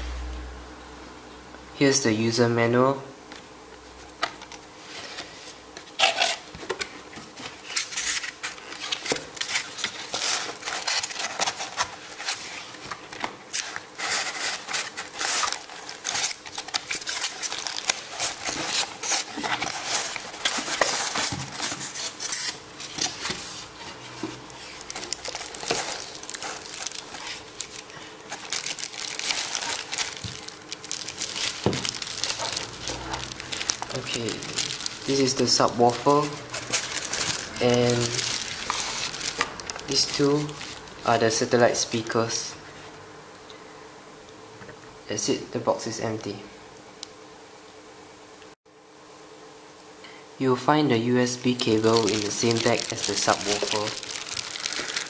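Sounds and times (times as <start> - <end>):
plastic wrapping crinkling: 4.2 - 42.2, 51.4 - 55.0.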